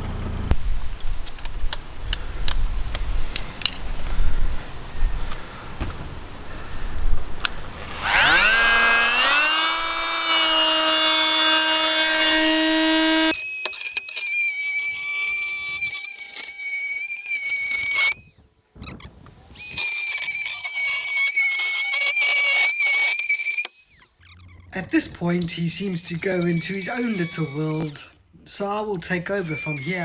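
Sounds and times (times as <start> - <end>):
power tool cutting sheet metal: 7.7 - 18.2, 19.6 - 24.0, 25.9 - 28.1, 29.3 - 30.0.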